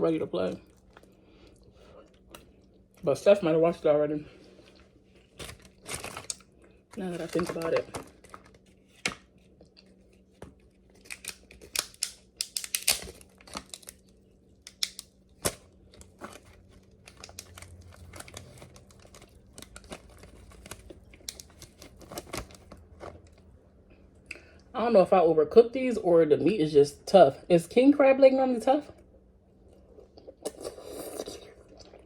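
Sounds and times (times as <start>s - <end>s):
crab shells cracking by hand: 10.9s - 22.8s.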